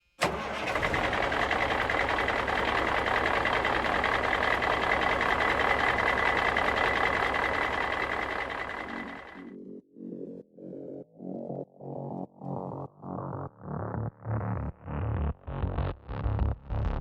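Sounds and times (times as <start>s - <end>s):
diesel engine drone: 0.2s - 9.4s.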